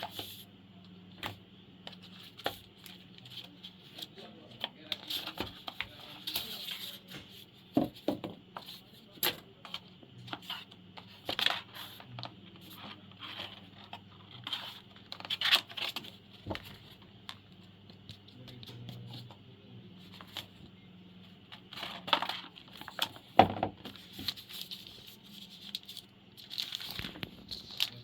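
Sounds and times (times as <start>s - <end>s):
packaging rustling and crinkling: 23.9s - 28.0s.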